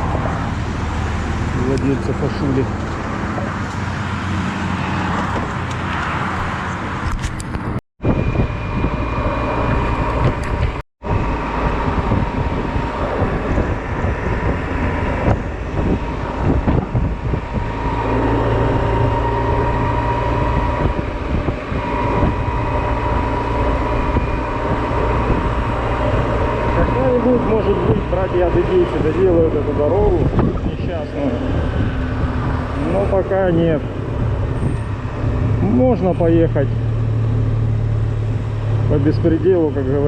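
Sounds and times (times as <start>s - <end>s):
wind on microphone: 5.0s - 35.9s.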